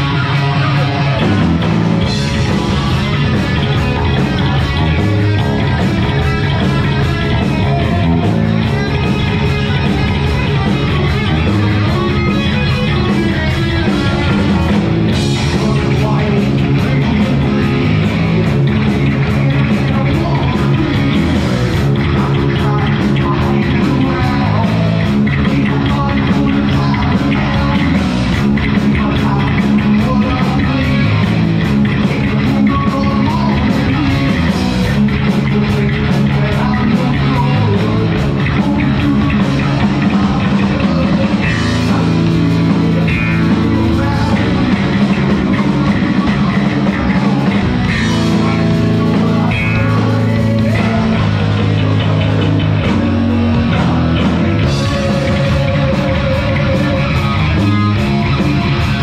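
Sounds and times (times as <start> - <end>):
heavy metal band playing live: 0.0 - 59.0.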